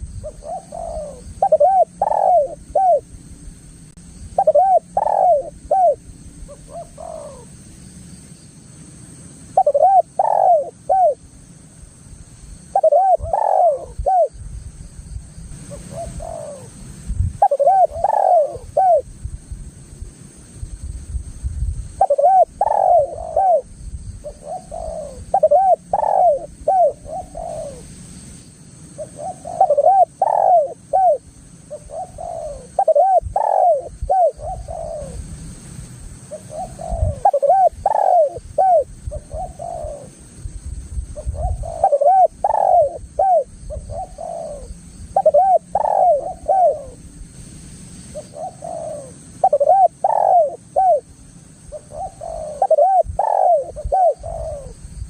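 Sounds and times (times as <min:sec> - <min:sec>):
dove cooing: 0:00.0 - 0:03.1, 0:04.4 - 0:07.6, 0:09.6 - 0:11.2, 0:12.7 - 0:14.4, 0:15.6 - 0:16.8, 0:17.4 - 0:19.1, 0:22.0 - 0:27.9, 0:29.0 - 0:35.3, 0:36.2 - 0:40.2, 0:41.2 - 0:47.0, 0:48.1 - 0:54.9.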